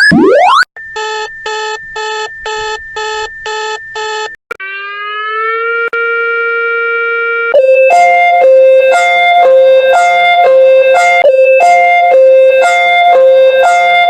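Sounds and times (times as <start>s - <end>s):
steady high tone: 0.0s - 2.6s, 7.5s - 14.0s
long sustained alert tone: 4.6s - 14.0s.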